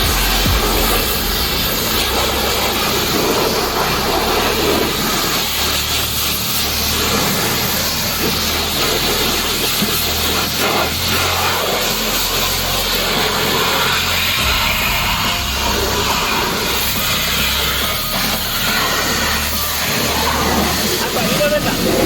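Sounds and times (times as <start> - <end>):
low hum: 0.0 - 5.9, 13.0 - 20.8
pressure washer spraying water: 0.0 - 22.0.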